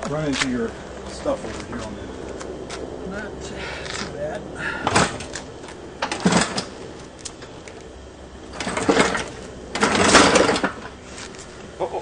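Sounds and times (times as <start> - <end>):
clattering and knocking: 6.0 - 6.7, 8.6 - 10.9.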